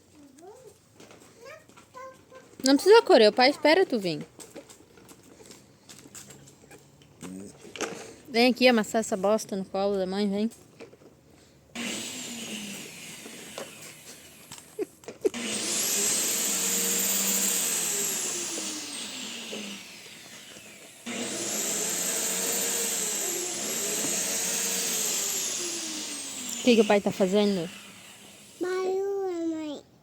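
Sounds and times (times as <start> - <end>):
electric motor whining: 11.8 - 28.8.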